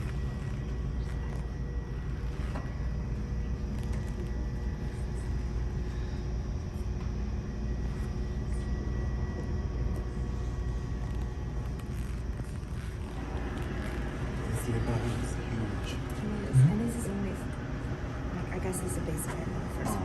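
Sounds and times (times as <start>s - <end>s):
faint hum: 0.0s - 20.0s
low room rumble: 0.0s - 20.0s.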